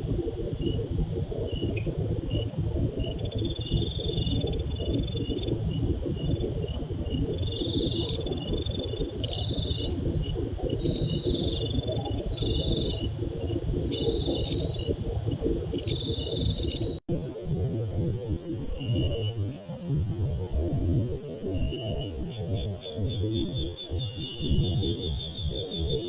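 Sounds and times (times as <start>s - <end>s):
rough low noise: 0.0s - 26.0s
insects chirping: 1.4s - 17.0s, 22.6s - 26.0s.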